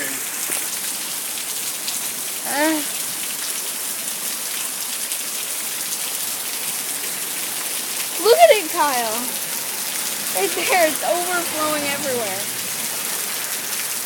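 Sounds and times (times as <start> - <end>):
heavy rain pouring: 0.0 - 14.0
person exclaiming: 8.2 - 9.3, 10.4 - 12.5.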